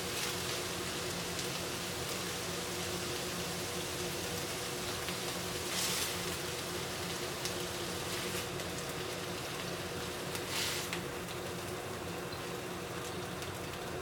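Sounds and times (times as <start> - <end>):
food sizzling in a frying pan: 0.0 - 14.0.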